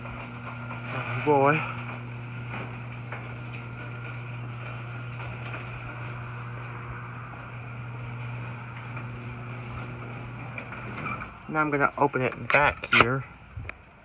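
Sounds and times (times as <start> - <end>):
garage door opener motor humming: 0.0 - 13.6
faint high squeaks: 3.2 - 3.8, 4.5 - 5.7, 6.3 - 7.5, 8.7 - 11.4.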